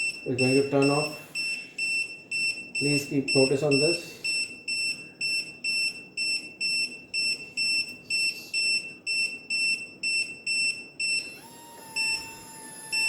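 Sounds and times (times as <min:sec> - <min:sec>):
high electronic beeping alarm: 0:00.0 - 0:13.0.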